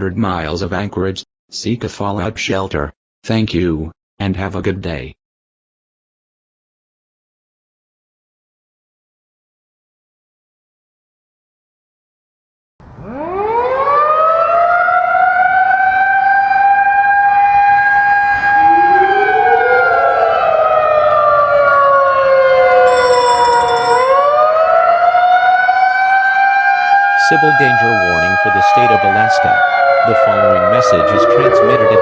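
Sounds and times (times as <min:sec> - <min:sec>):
civil defense siren wailing: 0:12.8 - 0:23.1, 0:24.1 - 0:32.0
rising siren tone: 0:12.9 - 0:23.0, 0:24.2 - 0:32.0.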